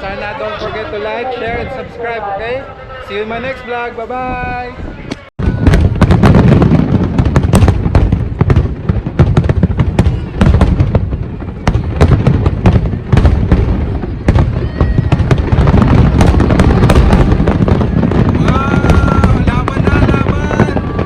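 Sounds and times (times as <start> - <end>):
fireworks crackling pops: 5.1 - 21.0
low rumble of booms: 5.4 - 21.0.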